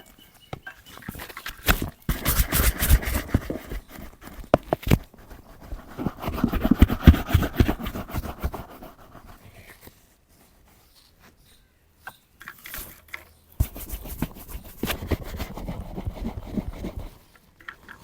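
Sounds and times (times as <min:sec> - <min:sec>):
brush scrubbing leather boot: 0:02.1 - 0:09.5, 0:13.6 - 0:17.2.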